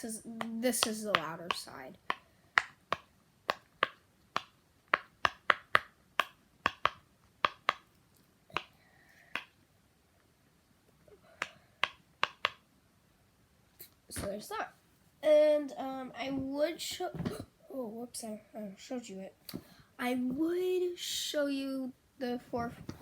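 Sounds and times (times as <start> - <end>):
pop-it toy bubbles popping: 0.4 - 7.9, 11.8 - 12.6.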